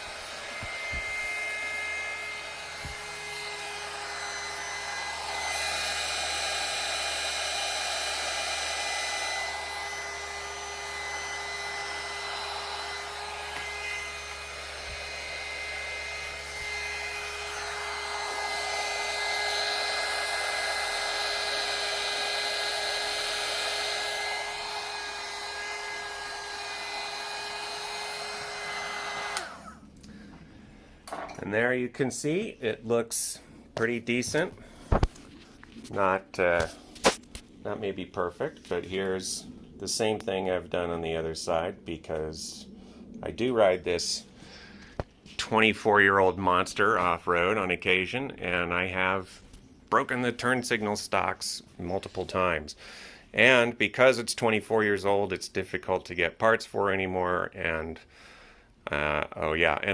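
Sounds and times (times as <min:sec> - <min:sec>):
hot-air blower whining: 0:00.0 - 0:31.3, 0:33.2 - 0:37.5.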